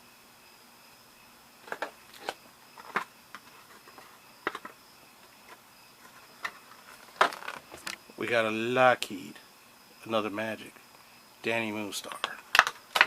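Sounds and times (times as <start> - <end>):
plastic clicks and crinkles: 1.6 - 8.0, 12.1 - 13.0.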